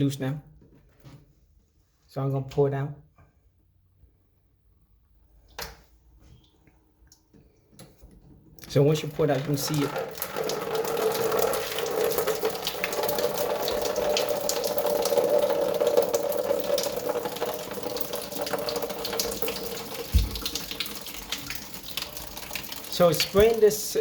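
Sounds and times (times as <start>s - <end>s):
water running from shower valve: 8.8s - 24.0s
low thump: 20.1s - 20.6s.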